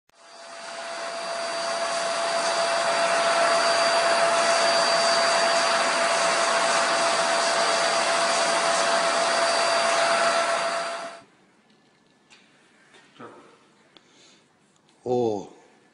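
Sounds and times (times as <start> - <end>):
vacuum cleaner running: 0.2 - 11.2.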